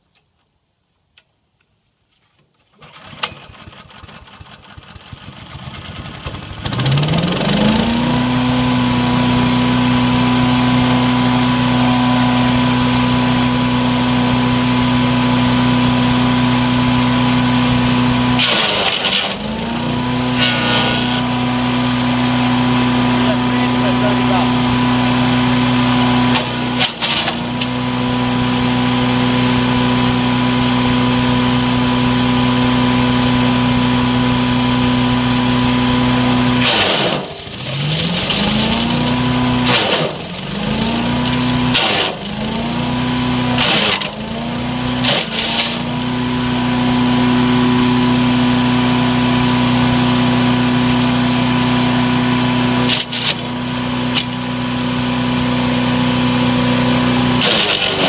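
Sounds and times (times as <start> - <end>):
wood chipper engine running: 2.6 - 58.0
wood cracking being chipped: 43.6 - 44.3, 57.4 - 58.0.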